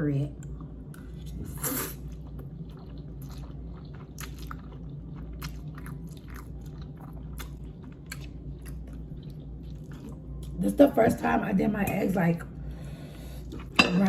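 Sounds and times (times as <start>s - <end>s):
chewing with wet mouth clicks: 2.0s - 10.6s.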